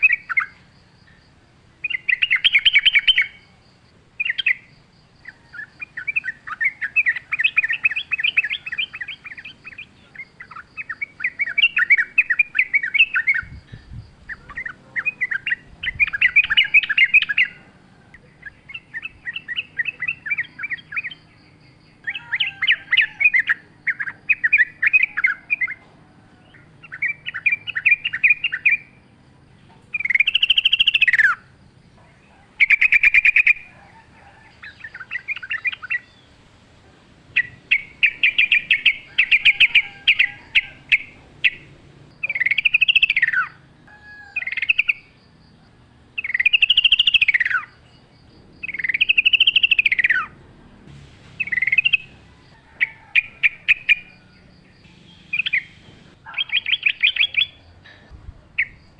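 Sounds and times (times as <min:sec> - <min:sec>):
bird chattering song: 0:00.0 - 0:29.0, 0:29.6 - 0:58.9.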